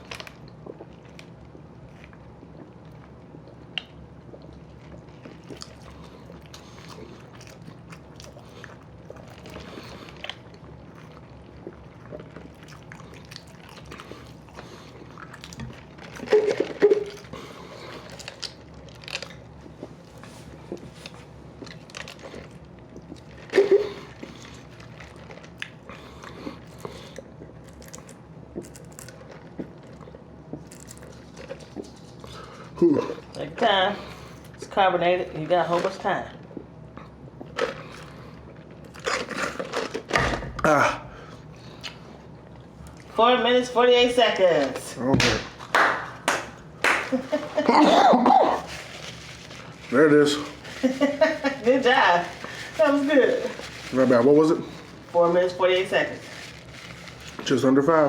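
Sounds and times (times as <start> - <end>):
person chewing food: 0.0 - 33.4, 36.4 - 43.1.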